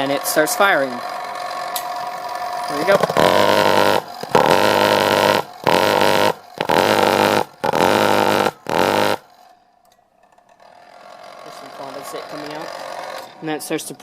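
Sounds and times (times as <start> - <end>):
furnace pulsing drone: 0.9 - 9.2.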